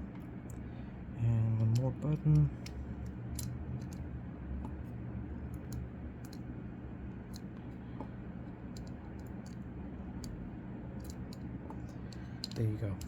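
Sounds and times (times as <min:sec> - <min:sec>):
steady low hum: 0:00.0 - 0:13.0
light clicks and taps: 0:01.5 - 0:04.8, 0:11.0 - 0:13.0.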